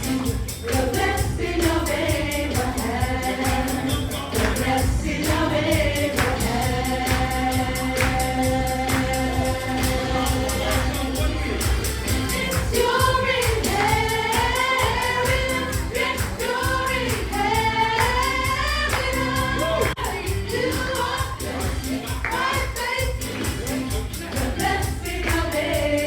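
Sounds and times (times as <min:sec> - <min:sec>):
band accompaniment: 0:00.0 - 0:26.0
choir singing gospel song: 0:00.0 - 0:26.0
steady percussion beat: 0:00.0 - 0:26.0.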